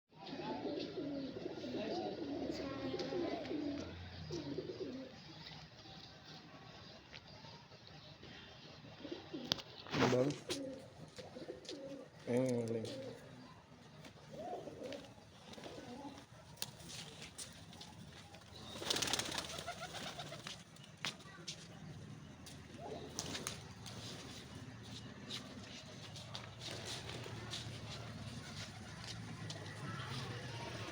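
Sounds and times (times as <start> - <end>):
pigeons cooing: 0.2 - 5.2, 8.6 - 13.4, 14.2 - 16.3
pigeon wings flapping: 16.6 - 20.8, 23.1 - 24.4, 26.3 - 30.9.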